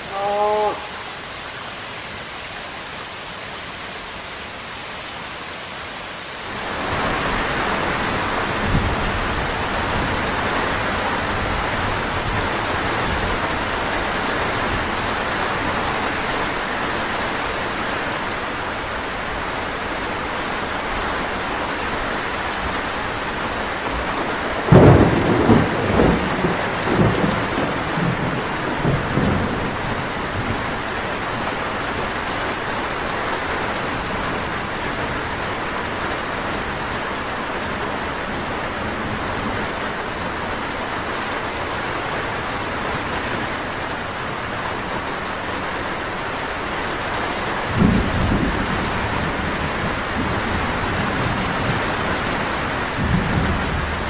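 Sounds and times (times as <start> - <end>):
steady rain: 0.0 - 54.0
thunder rumbling: 23.9 - 30.7.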